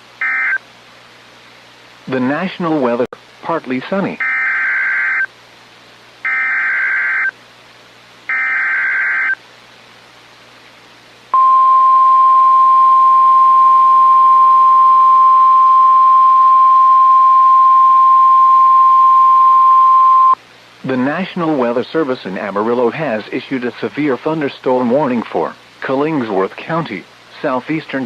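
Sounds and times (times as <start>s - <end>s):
steady warning alarm tone: 0.2s - 0.6s, 4.2s - 5.3s, 6.2s - 7.4s, 8.3s - 9.4s, 11.4s - 20.4s
buzzy digital data tones: 6.2s - 7.4s, 8.3s - 9.4s.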